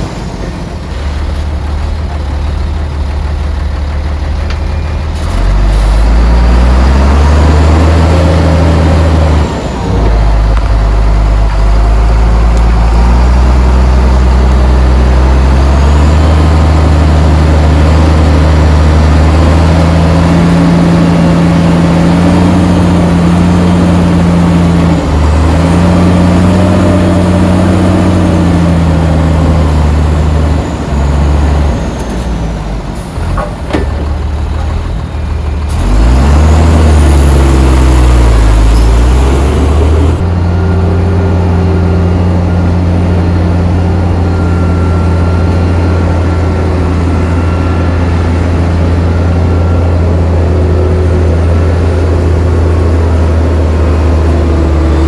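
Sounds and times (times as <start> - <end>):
heavy diesel engines revving: 0.0 - 55.0.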